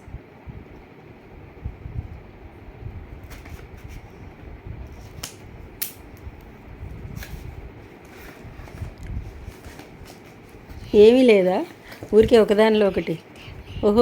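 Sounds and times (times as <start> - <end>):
cardboard and plastic rustling: 7.1 - 13.2.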